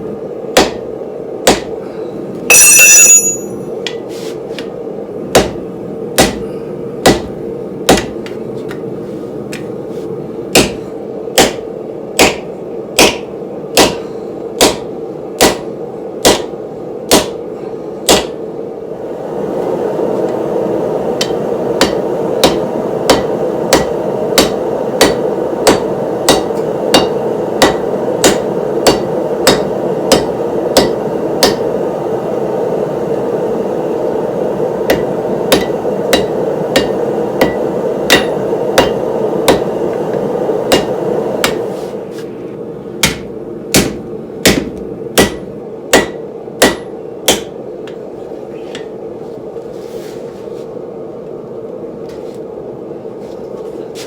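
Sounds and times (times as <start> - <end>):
loud steady hum: 0.0 - 54.0
hammer ringing on steel: 2.5 - 4.0, 12.2 - 16.5, 18.1 - 18.4, 21.2 - 31.6, 34.9 - 39.7, 43.8 - 47.6.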